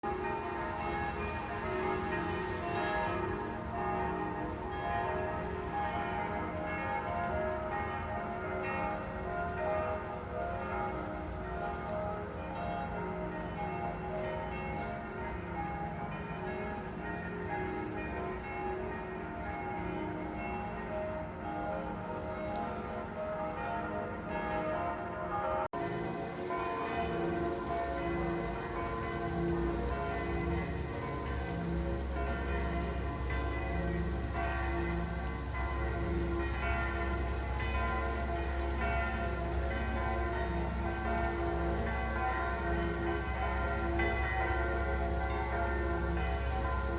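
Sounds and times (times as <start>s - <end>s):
church bells pealing: 0.0s - 46.9s.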